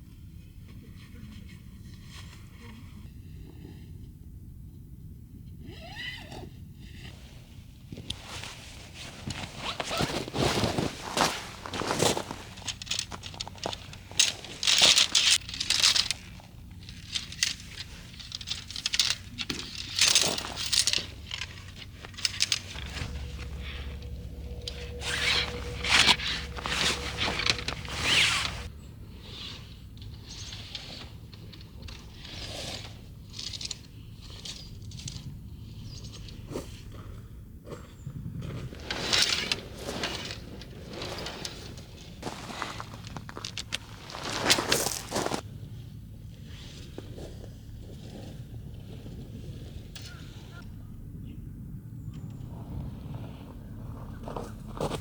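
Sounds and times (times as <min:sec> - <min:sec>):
rustling and crunching in snow: 0:08.0 - 0:28.7, 0:38.6 - 0:45.4
low steady rumble: 0:10.8 - 0:31.8.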